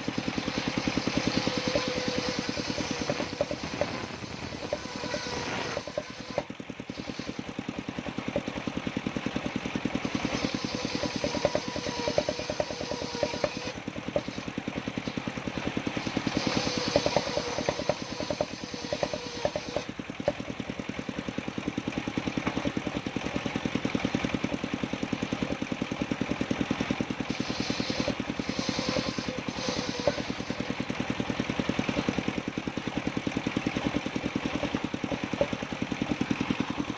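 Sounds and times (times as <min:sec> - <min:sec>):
sawmill engine chugging: 0:00.0 - 0:36.9.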